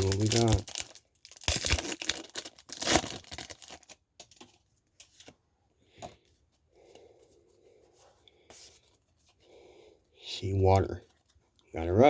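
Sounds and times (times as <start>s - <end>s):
foil wrapper tearing: 0.0s - 4.0s
wrapper and cards rustling: 0.0s - 5.4s.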